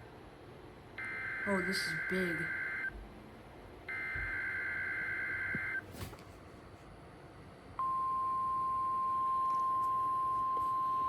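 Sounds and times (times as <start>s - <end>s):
steady warning alarm tone: 1.0s - 3.0s, 3.9s - 5.8s.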